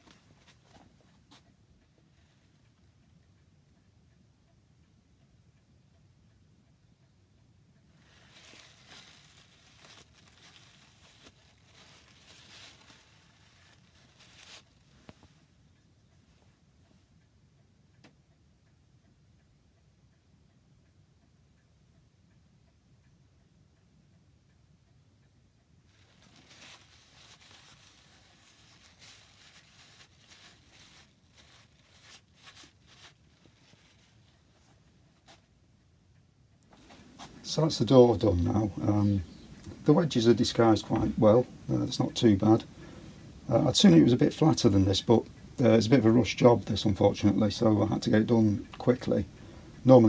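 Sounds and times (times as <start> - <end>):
faint rustling and scraping: 0.0 - 2.8, 7.9 - 17.0, 25.9 - 35.7, 36.6 - 50.0.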